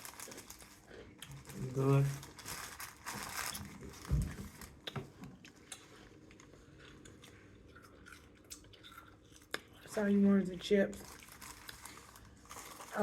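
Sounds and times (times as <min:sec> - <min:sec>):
person chewing: 0:04.8 - 0:09.9.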